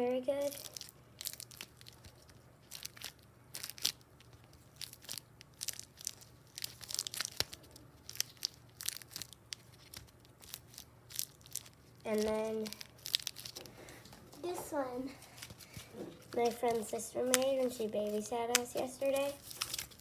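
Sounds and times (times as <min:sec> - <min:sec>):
pop-it fidget crackling: 0:16.3 - 0:19.9.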